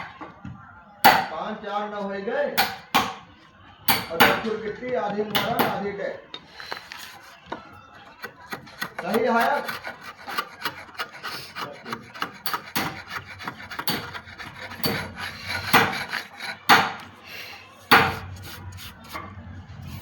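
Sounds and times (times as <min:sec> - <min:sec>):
hand tool scraping wood: 0:08.0 - 0:17.2, 0:17.9 - 0:19.2.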